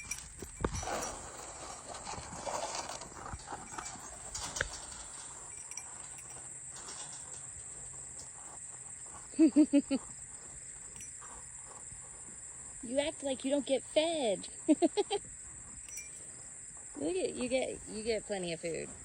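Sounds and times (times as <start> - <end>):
rustling: 0.0 - 9.5
cow hooves stepping and shuffling: 0.0 - 19.0.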